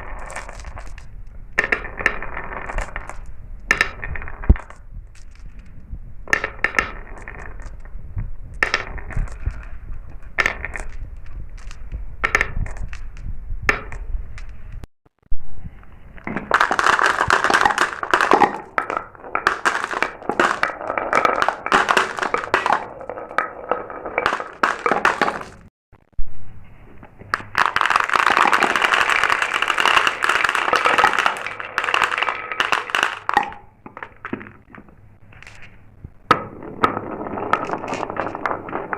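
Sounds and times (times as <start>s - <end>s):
marbles rattling down a track: 0.0s - 7.9s, 8.5s - 13.1s, 16.4s - 25.7s, 27.5s - 34.1s, 36.8s - 38.9s.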